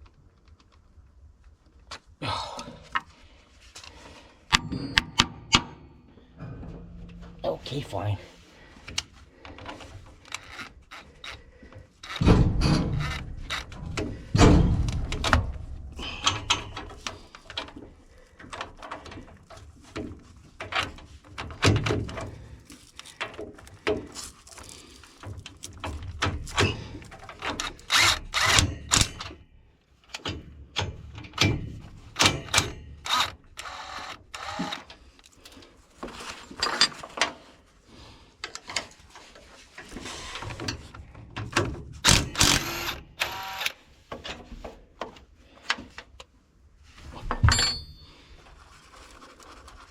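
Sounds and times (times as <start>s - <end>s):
tools knocking and rattling: 4.5s - 29.5s, 30.1s - 35.1s, 36.1s - 37.5s, 38.4s - 46.2s, 47.2s - 48.3s
low rumble: 4.6s - 8.9s, 12.2s - 17.1s.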